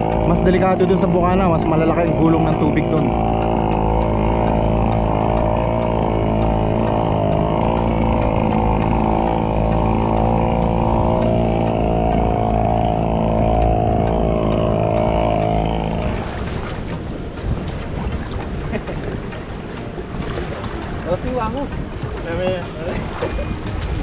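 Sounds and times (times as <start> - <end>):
small engine running: 0.0 - 16.8.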